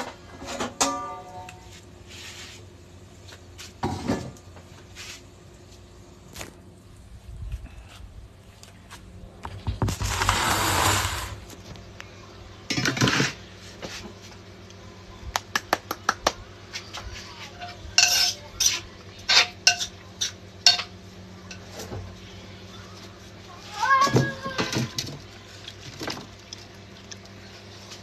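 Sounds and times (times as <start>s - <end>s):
scraping inside a mortar: 9.9s - 11.5s.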